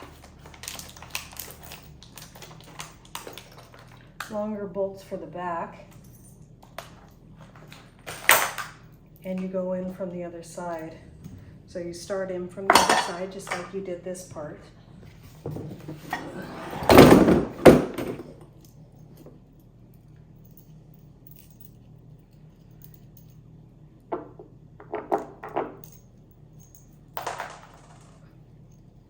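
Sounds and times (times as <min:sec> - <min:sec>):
metal bolts clinking and clattering: 0:05.9 - 0:09.5.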